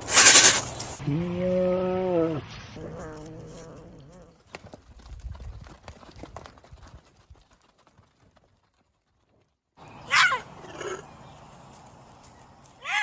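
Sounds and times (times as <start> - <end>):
horse hooves clip-clopping: 3.0 - 9.7.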